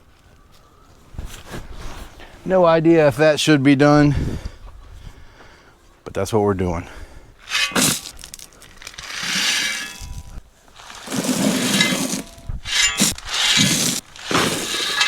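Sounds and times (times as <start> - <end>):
shovel crunching into gravel: 7.4 - 15.0
stones pouring and rattling: 7.5 - 15.0.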